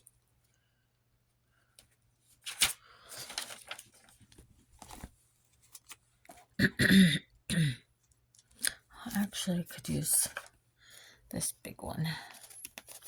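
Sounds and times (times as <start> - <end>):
paper rustling: 2.3 - 6.0, 12.2 - 13.0.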